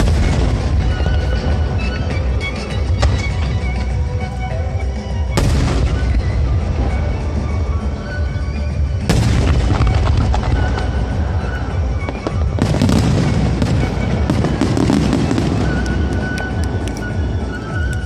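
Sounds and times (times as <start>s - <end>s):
fireworks booming: 0.0s - 2.2s, 5.4s - 7.1s, 9.0s - 17.4s
fireworks crackling: 0.0s - 4.0s, 8.8s - 18.0s
music playing: 0.0s - 18.0s.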